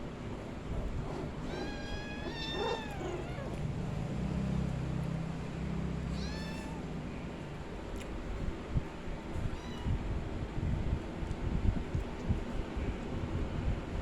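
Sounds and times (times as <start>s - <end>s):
low steady hum: 0.0s - 14.0s
young pet crying: 1.2s - 3.6s.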